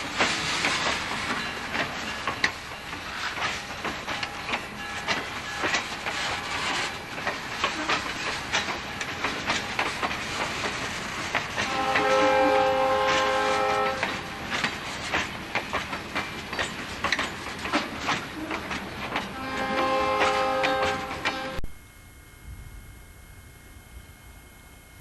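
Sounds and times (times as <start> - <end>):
train wheels clicking over rails: 0.0 - 21.6
locomotive horn blast: 11.6 - 14.2, 19.4 - 21.6.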